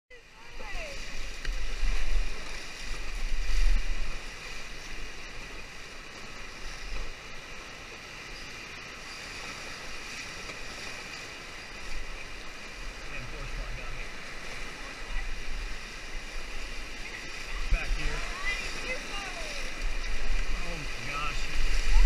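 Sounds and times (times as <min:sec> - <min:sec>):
river rapid rushing: 0:00.1 - 0:22.0.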